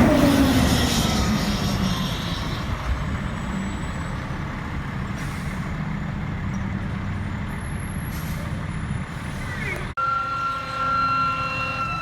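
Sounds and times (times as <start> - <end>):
fire truck engine rumbling: 0.0 - 12.0
siren winding down: 10.0 - 12.0.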